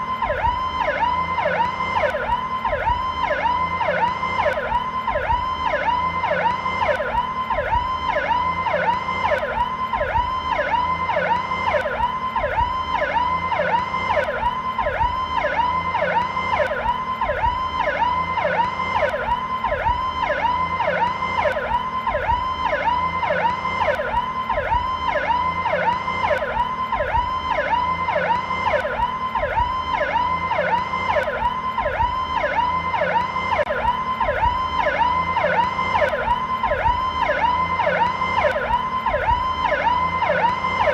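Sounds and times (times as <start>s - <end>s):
police siren sweeping: 0.0s - 40.9s.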